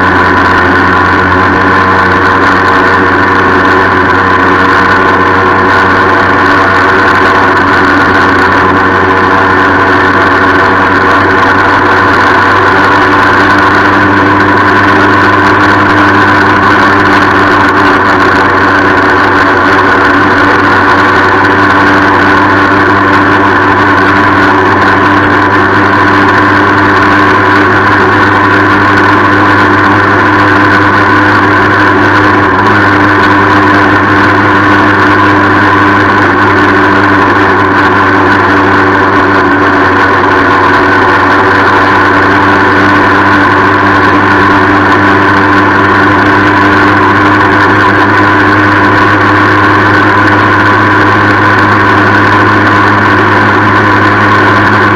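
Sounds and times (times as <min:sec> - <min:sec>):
moped engine running: 0:00.0 - 0:54.9.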